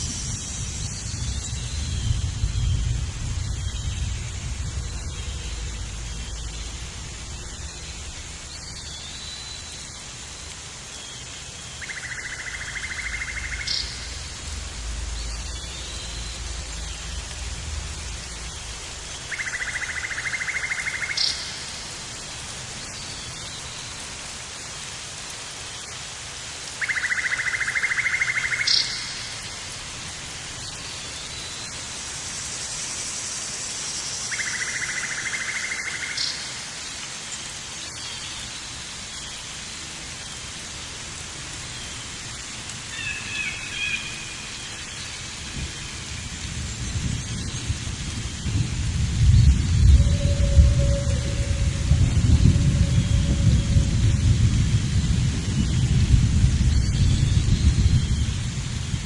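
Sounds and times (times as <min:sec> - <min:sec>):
rain-like hiss: 0:00.0 - 0:59.0
low rumble: 0:45.6 - 0:59.0.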